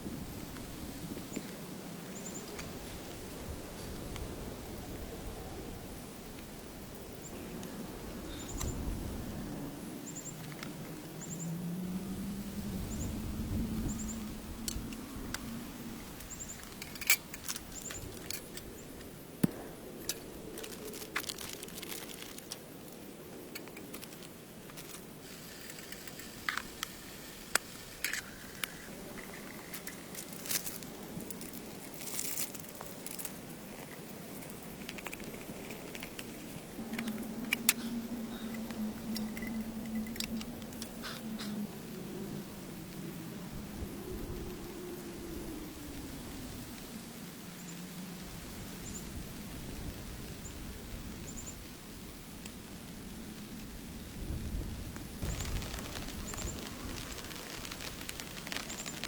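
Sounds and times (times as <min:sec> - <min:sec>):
steady rain hiss: 0:00.0 - 0:59.0
crinkling handling noises: 0:16.2 - 0:41.5, 0:55.0 - 0:59.0.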